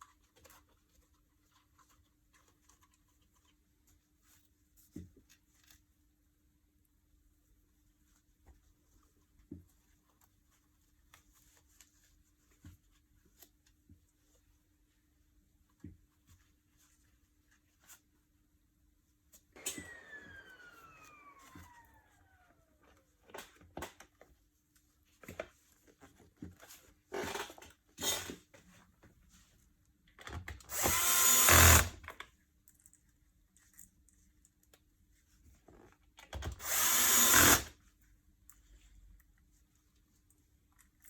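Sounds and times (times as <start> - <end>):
power drill running: 19.6 - 22.0, 30.7 - 32.0, 36.6 - 37.7.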